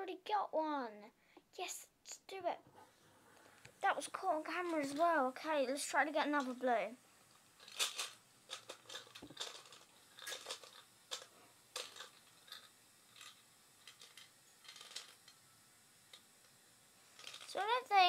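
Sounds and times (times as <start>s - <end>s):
plastic toy pieces clicking: 7.6s - 15.4s, 17.2s - 17.6s.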